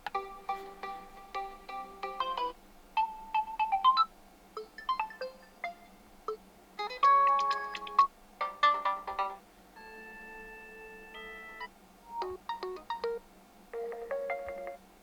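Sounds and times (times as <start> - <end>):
electronic ringtone melody: 1.7 - 6.4, 7.0 - 13.2.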